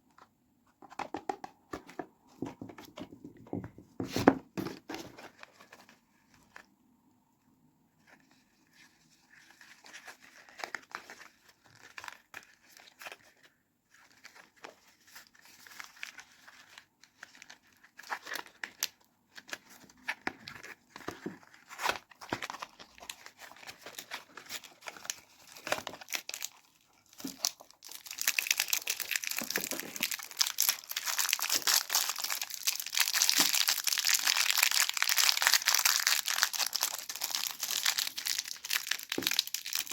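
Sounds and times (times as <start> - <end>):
packaging crinkling and tearing: 14.0 - 39.9.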